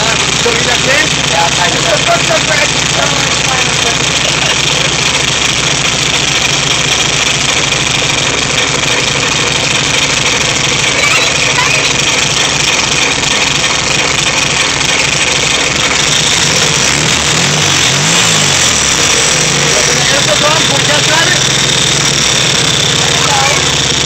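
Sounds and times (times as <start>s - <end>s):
air-cooled engine running: 0.0s - 24.0s.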